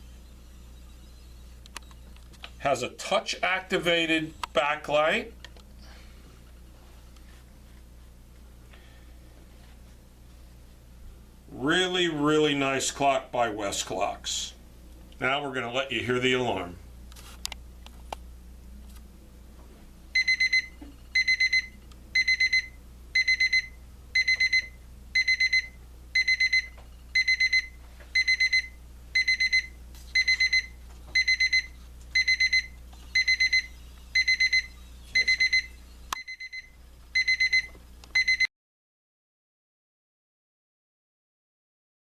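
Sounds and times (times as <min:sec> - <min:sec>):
alarm clock beeping: 0:20.2 - 0:38.5.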